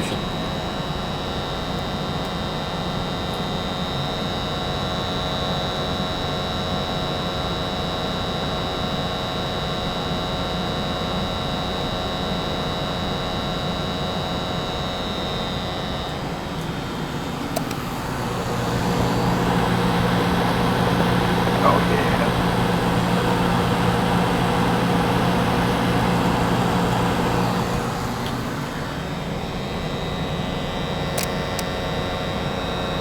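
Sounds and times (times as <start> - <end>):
furnace motors humming: 0.0 - 4.3, 13.1 - 33.0.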